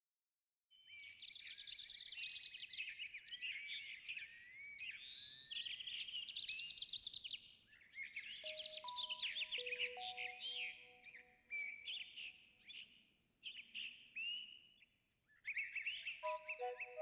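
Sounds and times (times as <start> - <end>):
songbirds chirping: 0.7 - 17.0
low musical notes: 16.2 - 17.0.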